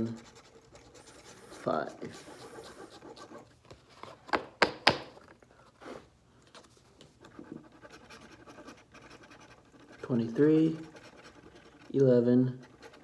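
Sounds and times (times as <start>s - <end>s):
scratching lottery ticket: 0.0s - 3.6s, 7.2s - 13.0s.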